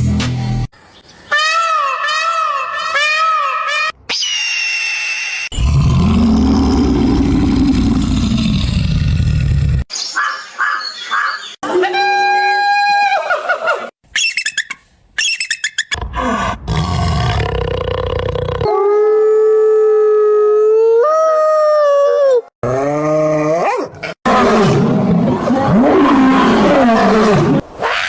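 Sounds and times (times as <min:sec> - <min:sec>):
animal growling: 0:05.5 - 0:09.9, 0:16.0 - 0:18.7.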